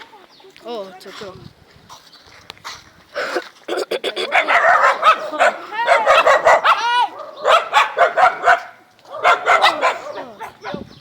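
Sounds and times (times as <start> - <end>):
dog barking: 4.3 - 10.9
dog whining yelps: 4.4 - 10.8.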